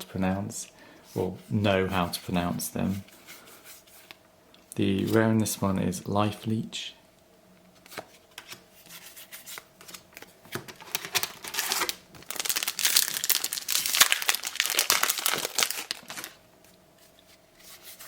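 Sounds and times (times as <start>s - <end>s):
wrapper tearing and crinkling: 10.7s - 16.4s.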